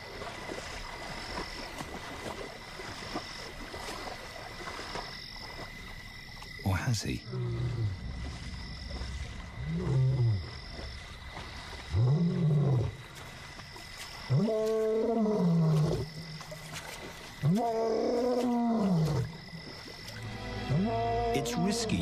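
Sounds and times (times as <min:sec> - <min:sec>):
lion roaring: 0:09.6 - 0:10.6, 0:11.9 - 0:13.0.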